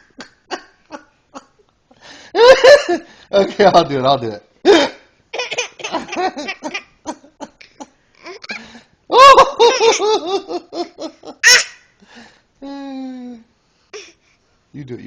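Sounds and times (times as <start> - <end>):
person laughing: 5.9 - 11.4.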